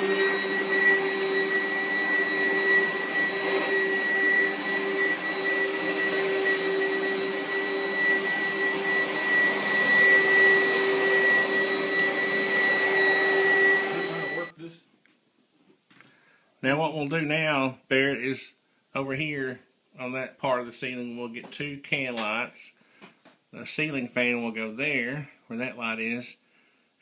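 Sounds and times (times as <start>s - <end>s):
small electric motor whining: 0.0s - 14.5s.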